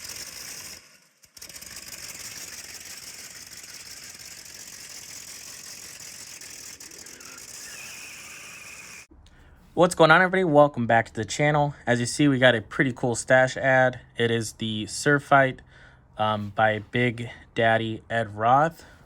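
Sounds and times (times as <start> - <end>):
dense rattling with rapid ticks: 0.0 - 9.0.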